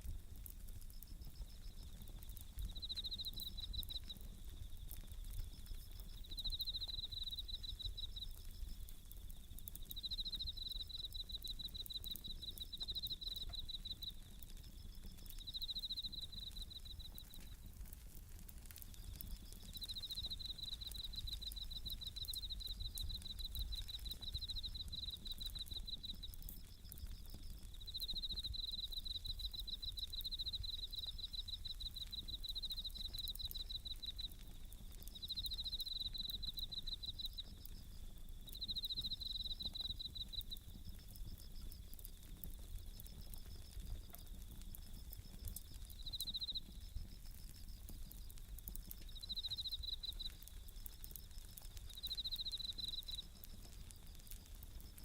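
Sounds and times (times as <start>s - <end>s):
campfire rumbling and crackling: 0.0s - 55.0s
crickets trilling: 0.0s - 55.0s.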